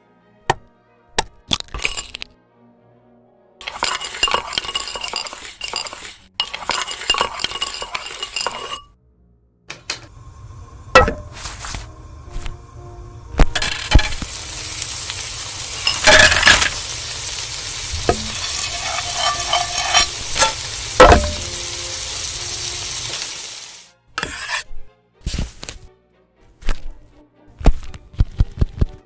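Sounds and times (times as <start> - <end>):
food sizzling in a pan: 3.6 - 8.8, 10.0 - 24.7
utensil clinking and scraping: 3.6 - 8.9, 9.9 - 12.8, 13.4 - 23.3, 24.2 - 24.7.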